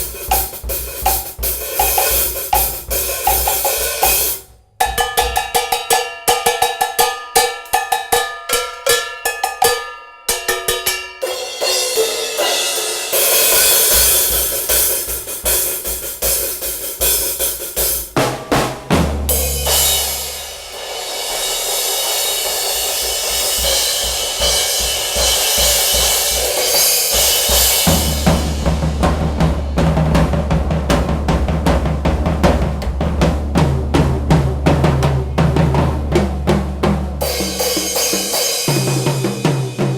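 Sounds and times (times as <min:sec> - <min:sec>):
heavy bass drum: 0:00.0 - 0:05.4, 0:11.8 - 0:39.9
drum kit playing: 0:00.0 - 0:39.9
cymbal wash: 0:19.2 - 0:29.7.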